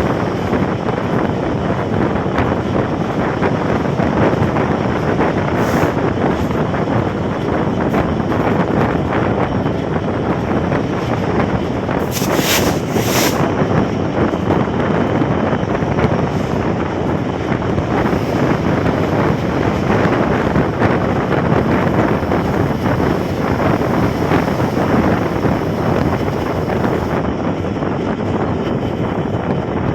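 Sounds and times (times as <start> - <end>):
train rumbling: 0.0 - 29.9
wind buffeting microphone: 0.0 - 29.9.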